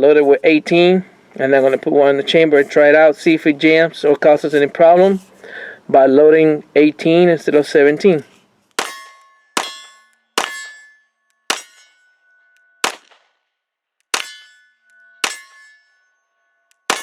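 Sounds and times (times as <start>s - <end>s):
metallic ring: 8.7s - 12.9s, 14.1s - 17.0s
pistol shots: 12.8s - 13.3s, 14.1s - 14.4s.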